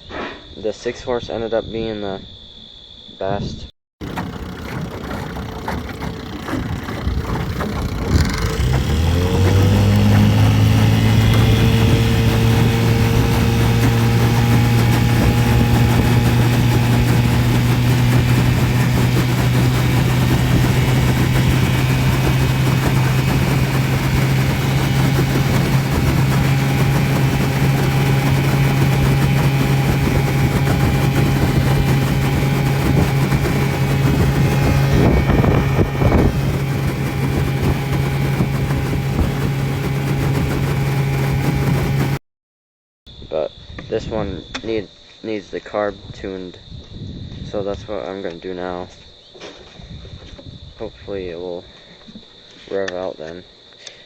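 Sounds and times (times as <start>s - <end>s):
outboard boat motor running: 4.0s - 42.2s.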